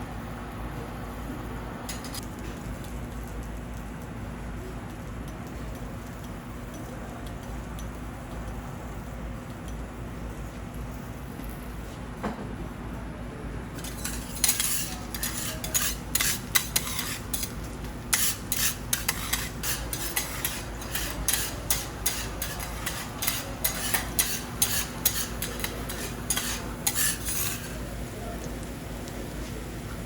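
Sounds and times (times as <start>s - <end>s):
metal utensils scraping on griddle: 13.8s - 27.9s.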